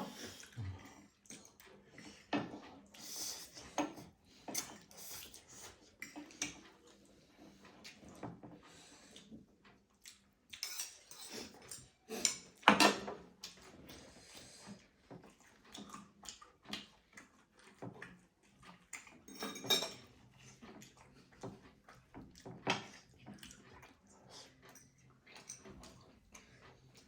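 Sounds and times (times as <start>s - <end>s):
cutlery clinking on plates: 10.6s - 13.2s, 19.3s - 20.1s.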